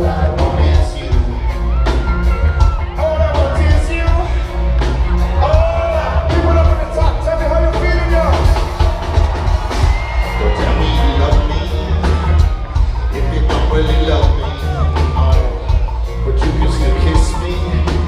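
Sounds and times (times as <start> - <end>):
live band playing: 0.0 - 18.0
drum hits: 5.4 - 13.1.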